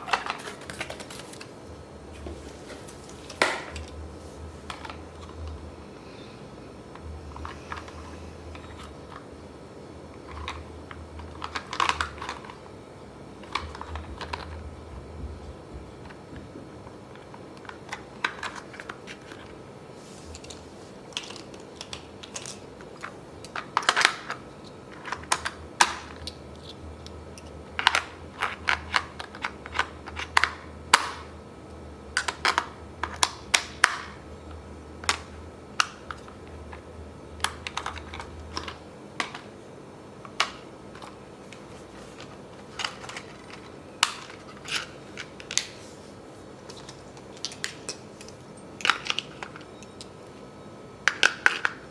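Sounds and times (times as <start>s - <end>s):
hands handling toy and packaging: 0.0s - 5.6s, 40.3s - 49.7s
faint low hum: 0.0s - 51.9s.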